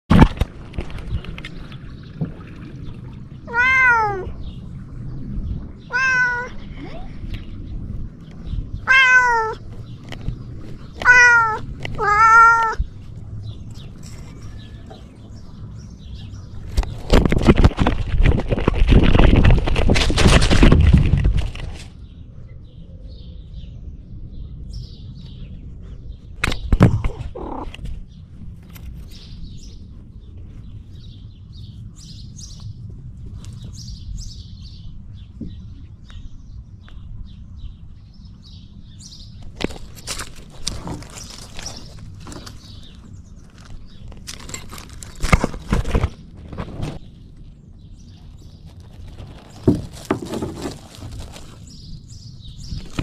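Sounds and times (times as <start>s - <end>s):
cat meowing: 3.5s - 4.3s, 5.9s - 6.6s, 8.8s - 9.6s, 11.0s - 12.8s.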